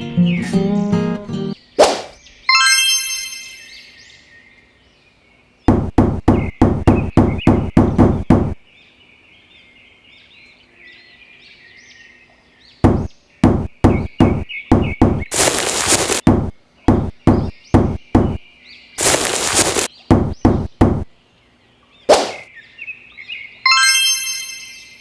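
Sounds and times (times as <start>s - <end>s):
sharp knocks on wood: 5.7s - 8.6s, 12.8s - 15.4s, 16.2s - 18.4s, 20.1s - 21.1s
ringing chime: 23.7s - 25.0s.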